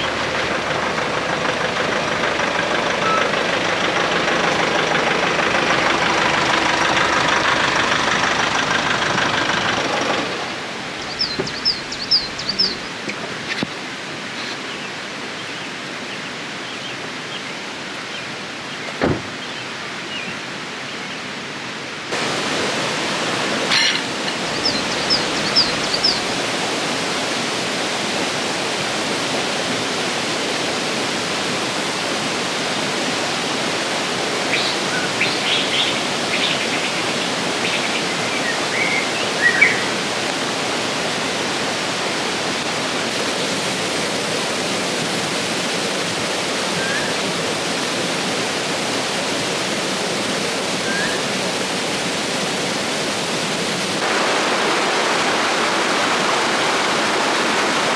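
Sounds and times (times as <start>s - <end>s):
birds chirping: 0.0s - 13.8s, 23.6s - 26.6s, 34.4s - 40.2s
river water rushing: 0.0s - 57.9s.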